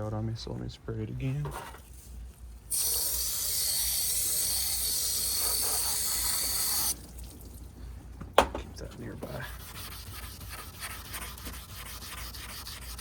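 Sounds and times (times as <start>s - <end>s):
spray bottle hissing: 2.7s - 7.0s.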